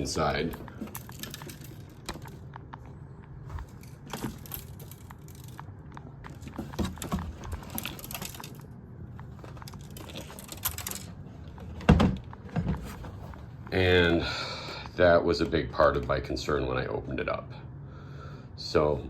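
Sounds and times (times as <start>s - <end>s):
loose part rattling in casing: 0.0s - 13.6s.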